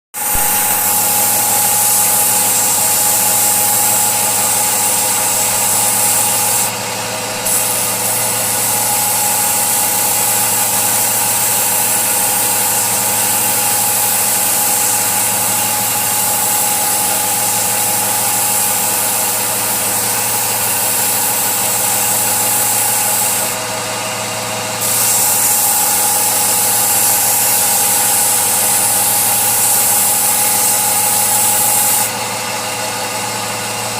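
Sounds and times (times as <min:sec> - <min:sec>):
woodworking power tool running: 0:00.1 - 0:33.9.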